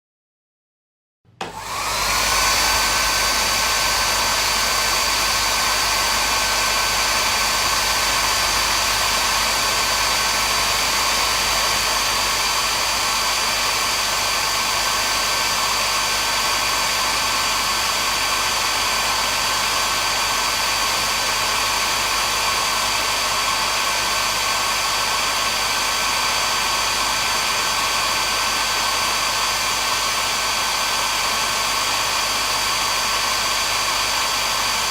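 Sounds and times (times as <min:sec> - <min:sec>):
hair dryer whine: 0:01.3 - 0:34.9.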